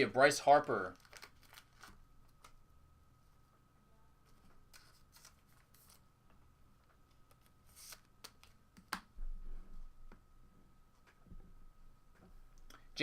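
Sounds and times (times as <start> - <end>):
trading cards sliding and clicking: 7.3 - 8.5.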